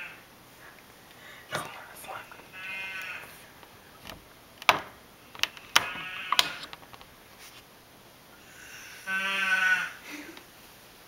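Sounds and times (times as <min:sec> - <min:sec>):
sharp clicks: 0:04.0 - 0:07.1
man snoring with bleating sound: 0:08.5 - 0:10.0.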